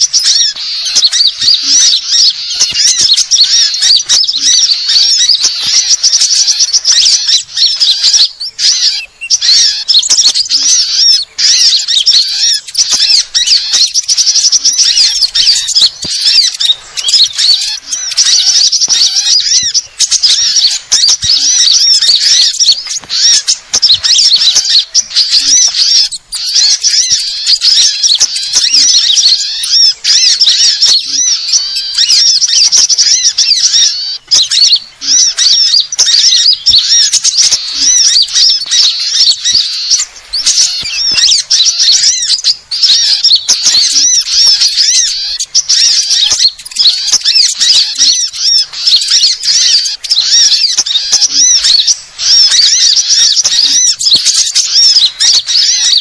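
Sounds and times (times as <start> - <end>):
songbirds chirping and trilling: 0.0 - 56.0.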